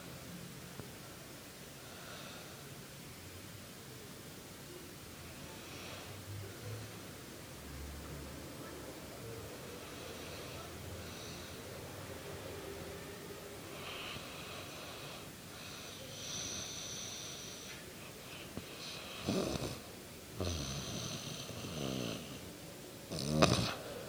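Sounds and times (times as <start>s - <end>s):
woman snoring: 18.8s - 22.4s, 23.1s - 23.9s.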